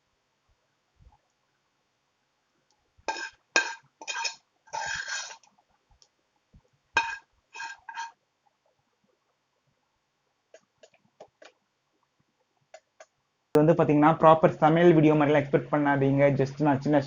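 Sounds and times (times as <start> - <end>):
metal utensil scraping a pan: 3.1 - 5.5, 7.0 - 8.2.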